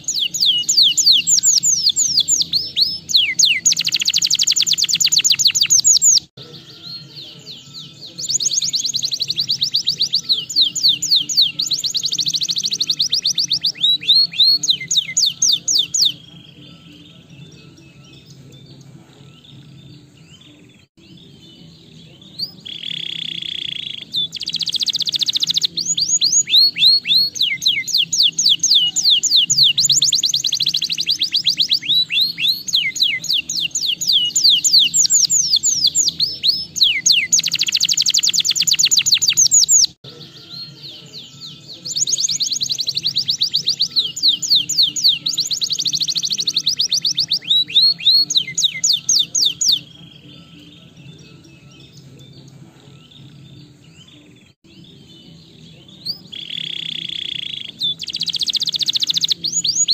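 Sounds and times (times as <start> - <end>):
canary trilling: 0.0 - 18.4, 22.4 - 50.6, 56.1 - 59.9.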